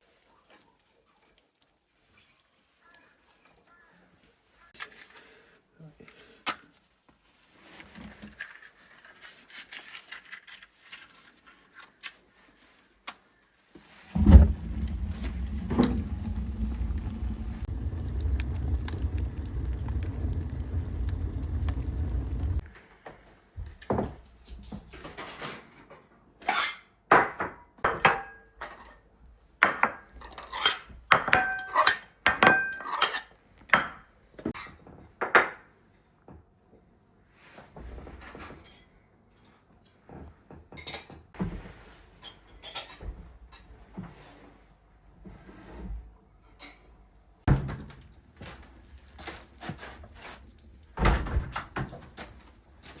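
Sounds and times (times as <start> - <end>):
heavy thuds: 14.1 - 22.6
dishes and cutlery clinking: 29.7 - 34.0, 42.2 - 43.7.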